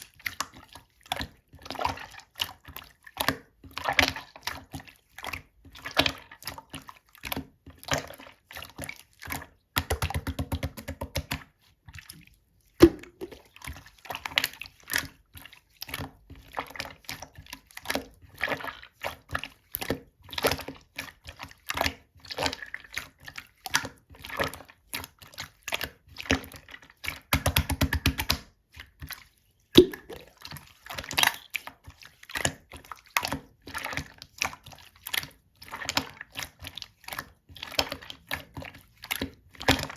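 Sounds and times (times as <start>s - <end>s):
slime squished by hand: 29.7s - 31.7s.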